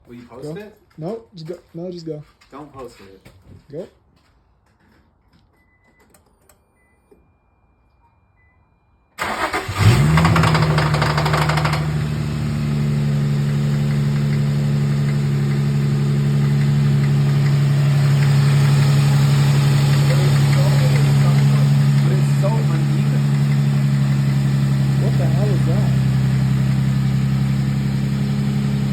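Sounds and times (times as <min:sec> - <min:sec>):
engine cranking: 0:09.2 - 0:26.9
car engine idling with ticking clatter: 0:09.2 - 0:28.9.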